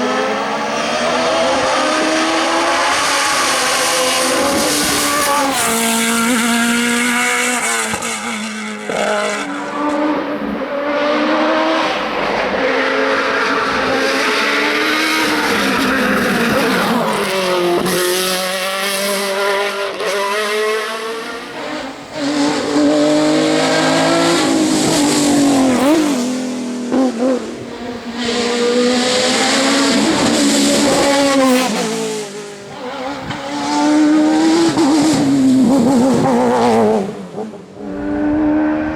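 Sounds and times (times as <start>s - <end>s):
race car engines revving: 0.0s - 38.9s.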